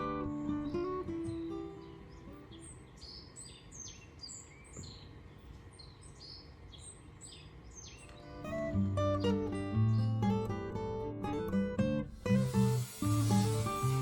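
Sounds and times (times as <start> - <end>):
guitar tune: 0.0 - 2.4, 8.3 - 14.0
birds chirping: 0.2 - 10.3.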